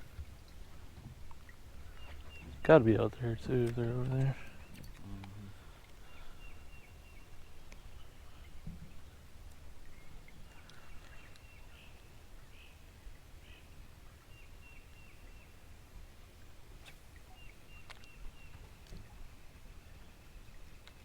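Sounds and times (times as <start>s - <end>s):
low outdoor rumble: 0.0s - 10.8s
faint bird chirps and trills: 0.2s - 21.0s.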